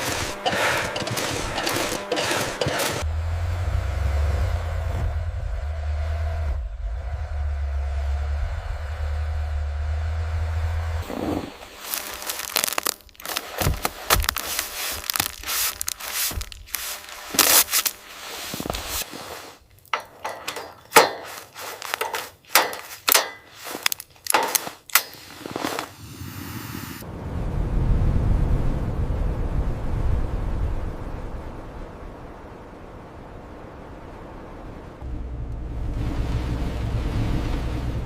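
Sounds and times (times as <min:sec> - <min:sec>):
scrapes and knocks of handling: 0:00.0 - 0:03.0, 0:11.0 - 0:25.9
steady low rumble: 0:03.0 - 0:12.3, 0:26.0 - 0:38.0.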